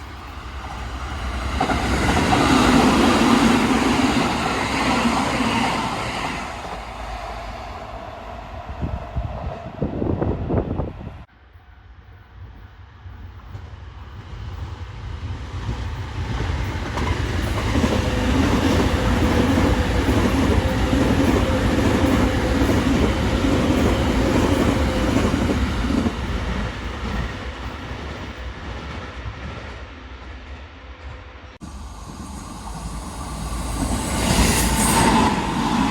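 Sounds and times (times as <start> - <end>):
electric train passing: 0.0 - 35.9.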